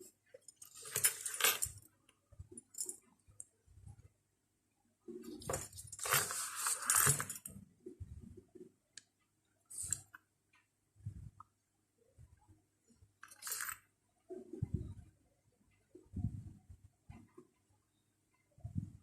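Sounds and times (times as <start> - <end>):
rustling: 5.2 - 7.5.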